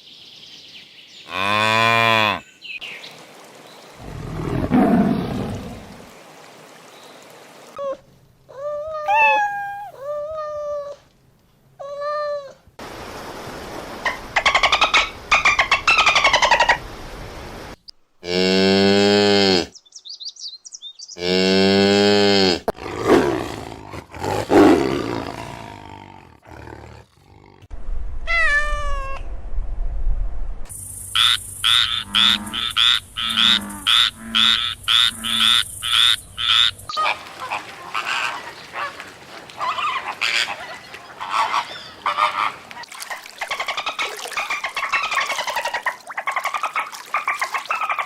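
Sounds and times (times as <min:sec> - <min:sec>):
animal calls: 0:09.0 - 0:10.6.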